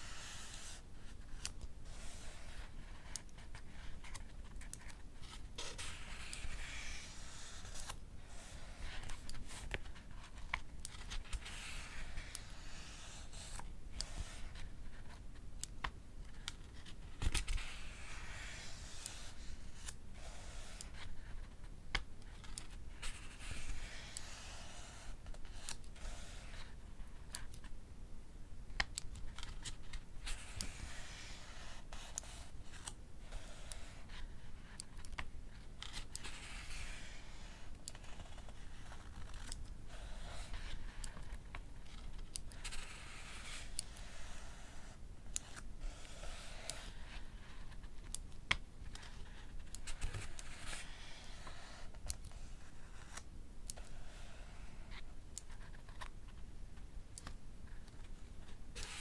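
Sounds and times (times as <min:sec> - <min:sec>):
book pages turning: 0:00.0 - 0:27.7, 0:28.8 - 0:56.4, 0:57.2 - 0:59.0.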